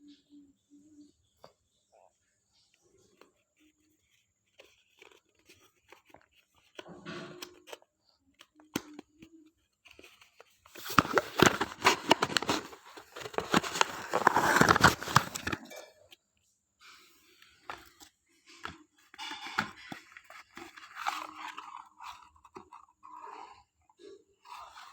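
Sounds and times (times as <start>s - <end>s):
rustling: 9.8s - 15.8s
packaging tearing and crinkling: 10.7s - 15.7s.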